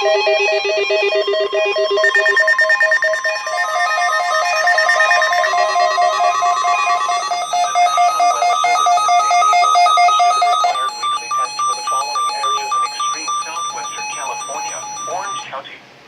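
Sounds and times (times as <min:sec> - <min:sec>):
weather radios beeping alerts: 0:00.0 - 0:15.8
broadcast voice: 0:04.3 - 0:15.9.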